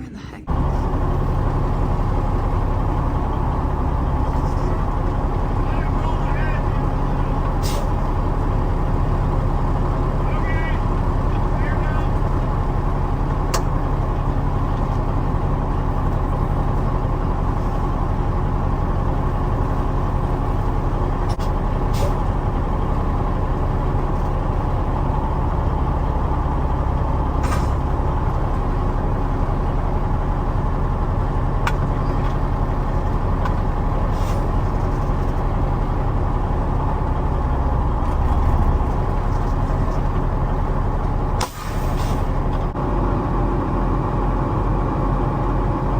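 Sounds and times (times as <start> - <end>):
diesel truck engine running: 0.0 - 45.9.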